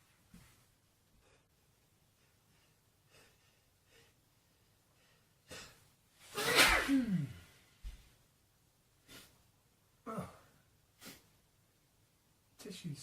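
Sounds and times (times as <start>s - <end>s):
man sneezing: 6.3s - 7.5s.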